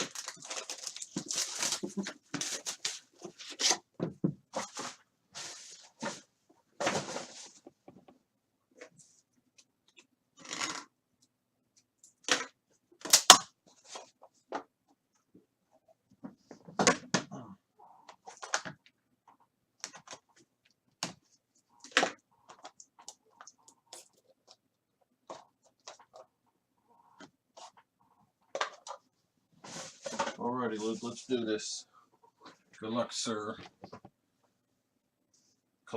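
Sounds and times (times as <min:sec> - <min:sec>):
plastic wrap crinkling and tearing: 0:00.0 - 0:03.0.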